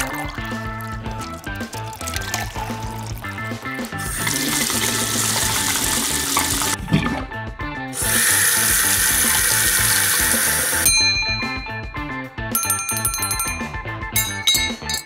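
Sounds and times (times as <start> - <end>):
water running from a tap: 0.0 - 7.3, 8.0 - 10.9
background music: 0.0 - 15.0.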